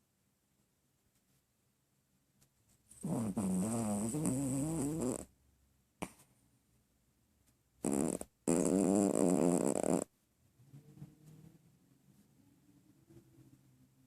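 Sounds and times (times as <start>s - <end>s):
dog snoring: 3.0s - 5.3s, 7.8s - 10.1s.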